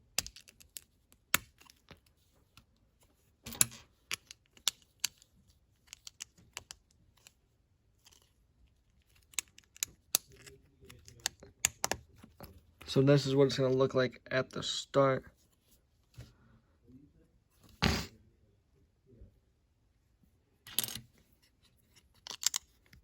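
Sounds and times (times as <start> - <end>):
plastic bricks clicking together: 0.1 - 1.9, 3.5 - 7.3, 9.0 - 12.0, 22.2 - 23.0.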